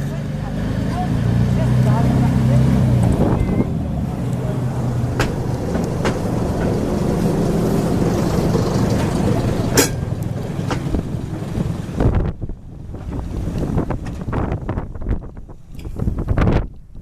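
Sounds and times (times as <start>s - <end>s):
train rumbling: 0.0s - 16.8s
sharp knocks: 5.1s - 6.9s.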